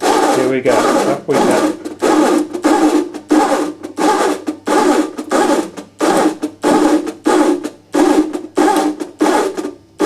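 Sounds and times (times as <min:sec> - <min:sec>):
rough rubbing strokes of wire rig: 0:00.0 - 0:09.6.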